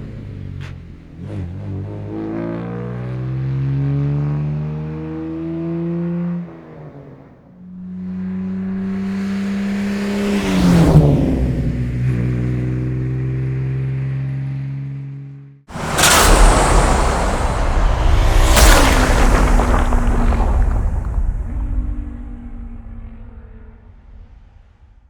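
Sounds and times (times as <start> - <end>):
car engine accelerating: 0.0 - 23.8
car passing by: 7.2 - 12.0, 15.7 - 23.2.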